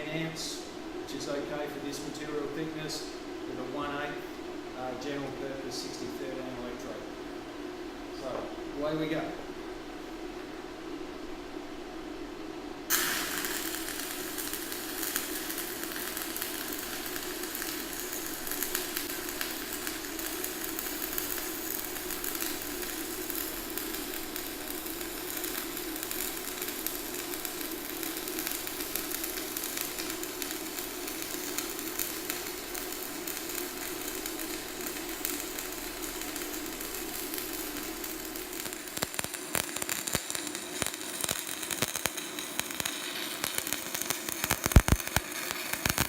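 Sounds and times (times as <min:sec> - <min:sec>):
welding arc crackling: 0:12.9 - 0:46.0
welding arc striking crack: 0:12.9 - 0:46.0.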